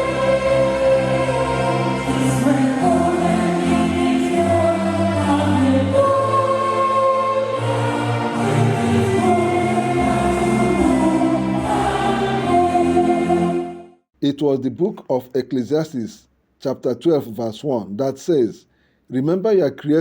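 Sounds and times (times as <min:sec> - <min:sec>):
choir singing held notes: 0:00.0 - 0:13.9.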